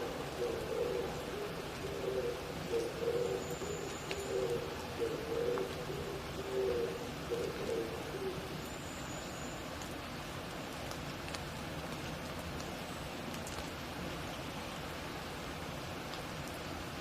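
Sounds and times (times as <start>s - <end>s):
dove cooing: 0.0s - 8.6s
rain hiss: 0.0s - 17.0s.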